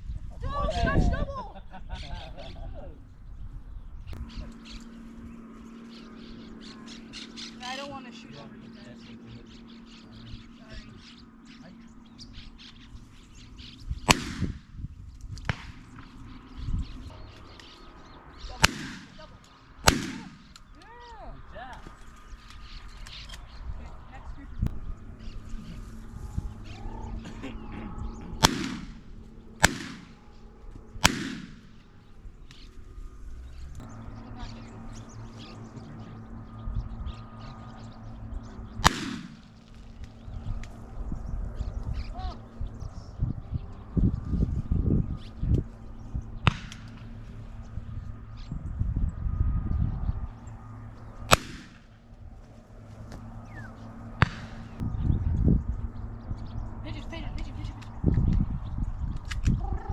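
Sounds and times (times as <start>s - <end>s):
shotgun shots with echo: 14.1s - 14.7s, 18.6s - 19.2s, 19.8s - 20.6s, 28.4s - 30.2s, 31.0s - 31.8s, 38.8s - 39.6s, 46.4s - 47.1s, 51.3s - 51.9s, 54.2s - 54.8s.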